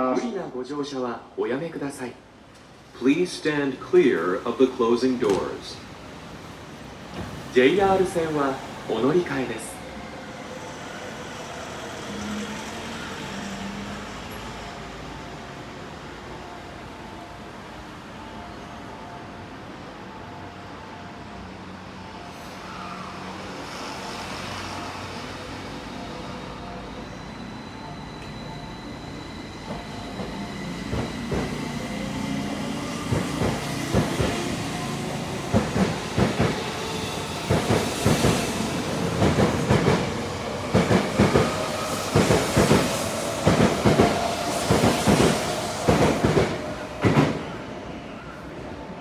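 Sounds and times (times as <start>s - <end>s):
electric train whine: 0.6s - 49.0s
wheels clacking over rail joints: 29.7s - 47.4s.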